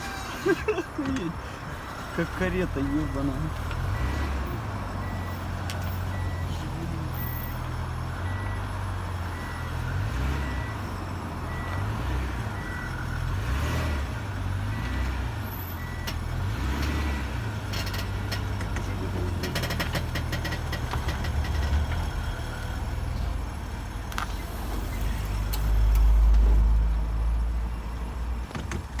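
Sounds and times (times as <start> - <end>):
road and engine rumble: 0.0 - 29.0
car body creaking and clicking: 17.7 - 22.1, 24.1 - 24.4, 28.4 - 29.0.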